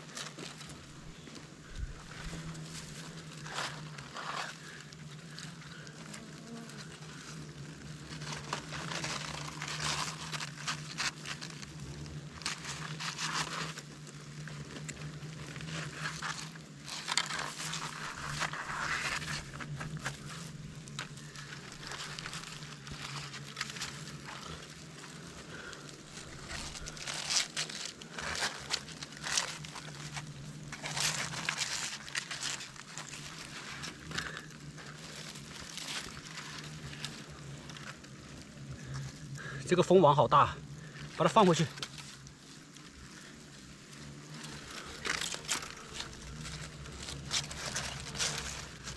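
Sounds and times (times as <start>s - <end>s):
papery nest crackling and rustling: 0.0s - 48.9s
steady low hum: 0.6s - 39.7s.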